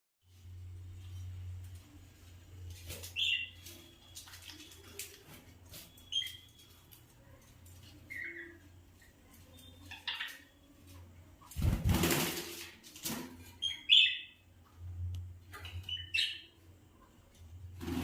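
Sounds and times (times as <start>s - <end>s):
birds chirping: 3.0s - 11.8s, 13.5s - 14.5s, 15.4s - 16.8s.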